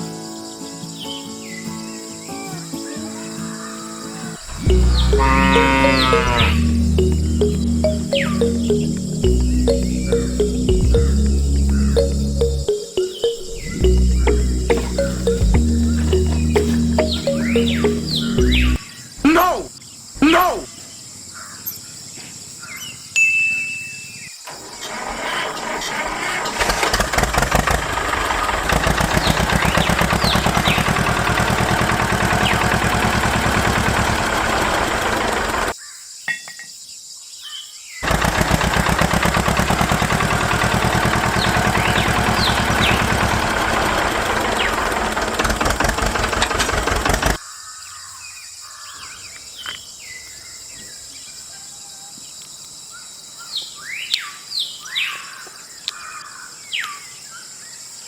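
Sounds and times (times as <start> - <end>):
small motor rattling: 24.6 - 35.7, 38.0 - 47.4.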